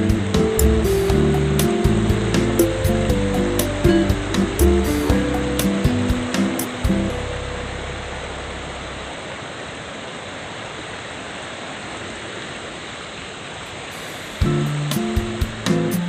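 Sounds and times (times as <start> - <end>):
background music: 0.0 - 8.8, 14.4 - 16.0
waterfall roaring: 0.0 - 16.0.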